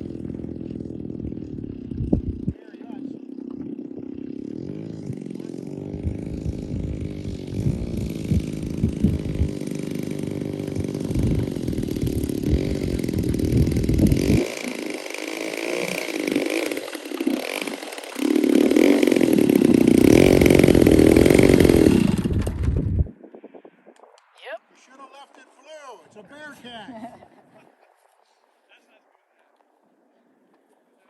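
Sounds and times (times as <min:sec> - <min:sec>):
model plane engine running: 0:00.0 - 0:22.9.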